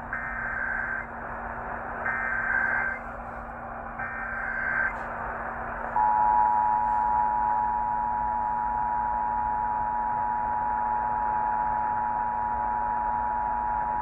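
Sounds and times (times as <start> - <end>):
screeching data bursts: 0.0 - 3.2, 3.9 - 5.0
radio hiss: 0.0 - 7.2
low hum: 0.0 - 13.6.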